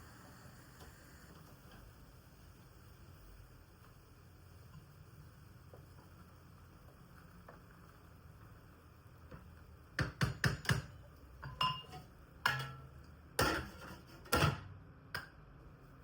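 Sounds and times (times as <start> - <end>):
dishes and utensils clattering: 10.4 - 14.6.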